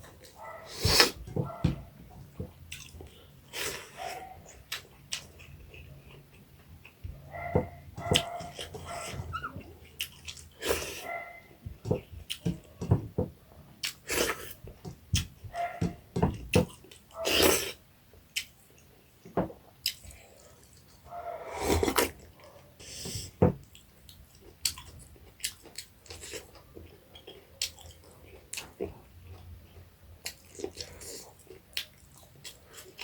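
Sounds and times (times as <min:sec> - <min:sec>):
chewing and lip-smacking: 0:08.2 - 0:10.6, 0:23.6 - 0:33.0.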